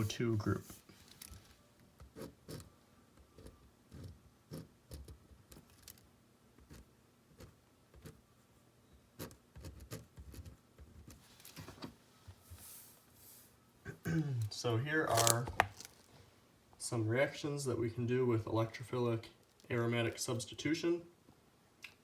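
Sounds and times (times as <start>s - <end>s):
pen writing on paper: 2.0s - 2.7s, 3.4s - 5.2s, 6.6s - 8.2s, 9.2s - 10.6s.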